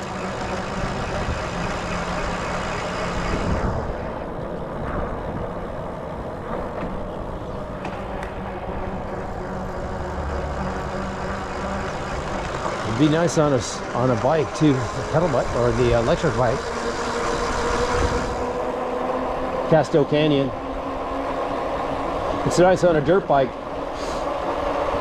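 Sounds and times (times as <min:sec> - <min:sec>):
vehicle engine hum: 0:00.0 - 0:25.0
road hiss: 0:22.3 - 0:25.0.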